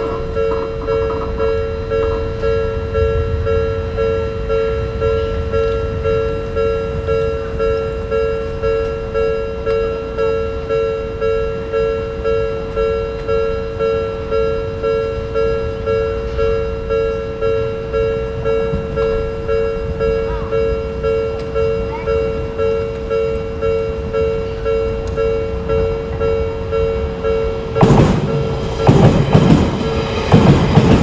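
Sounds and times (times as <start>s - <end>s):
level-crossing warning bell ringing: 0.0s - 31.0s
low rumble: 25.8s - 31.0s.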